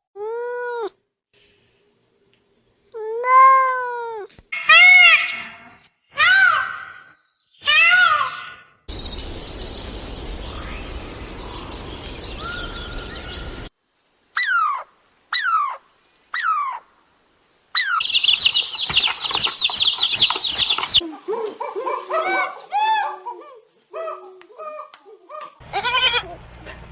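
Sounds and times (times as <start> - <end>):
background hiss: 1.3 - 3.0, 8.9 - 24.0
bird calls falling in pitch: 4.6 - 13.7, 17.8 - 21.0
low rising and falling bird calls: 4.6 - 13.7, 14.3 - 16.9, 17.7 - 21.0
birds chirping: 6.8 - 13.7, 17.7 - 21.0.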